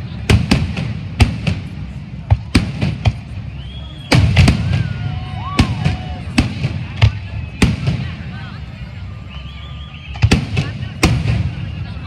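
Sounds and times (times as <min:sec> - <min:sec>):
fireworks bangs and pops: 0:00.1 - 0:08.6, 0:10.0 - 0:12.0
firework whistles: 0:03.2 - 0:06.3, 0:09.1 - 0:12.0.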